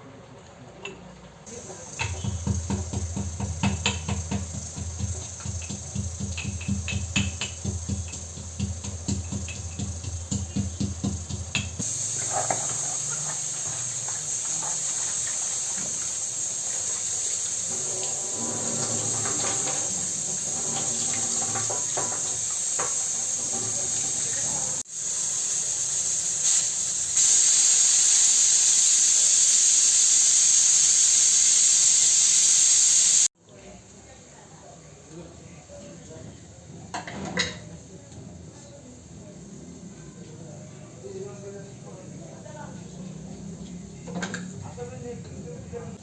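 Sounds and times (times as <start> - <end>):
pressure cooker hissing: 1.5 - 33.4.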